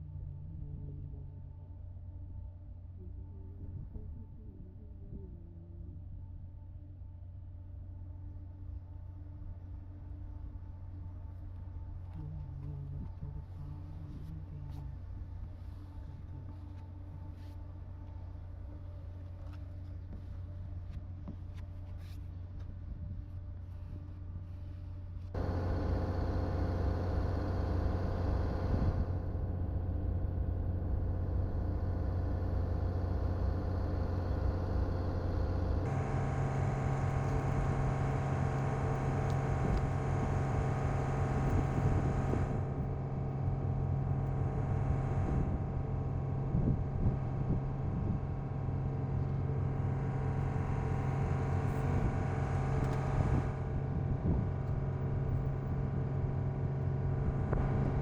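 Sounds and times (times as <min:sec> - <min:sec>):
truck engine running: 0:25.4 - 0:58.0.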